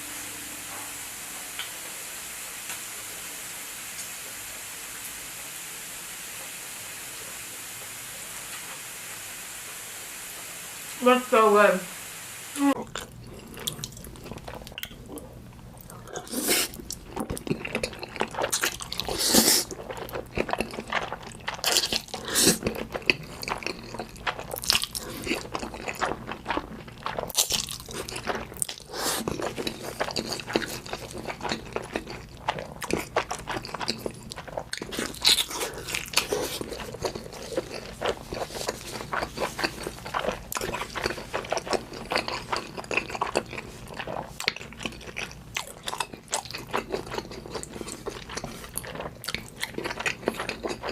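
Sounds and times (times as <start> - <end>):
person chewing crunchy food: 12.8 - 50.9.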